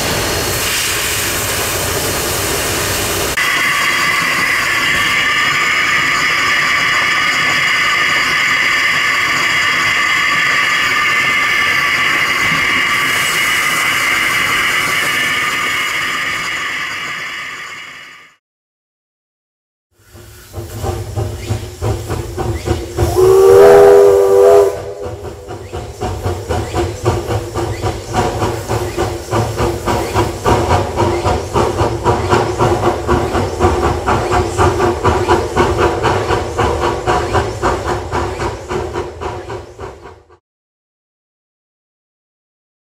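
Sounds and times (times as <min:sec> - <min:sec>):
steam hissing: 0:00.0 - 0:18.4, 0:20.0 - 0:40.4
steam locomotive exhaust beats: 0:00.0 - 0:18.4, 0:19.9 - 0:40.4
steam locomotive whistle: 0:23.0 - 0:25.6.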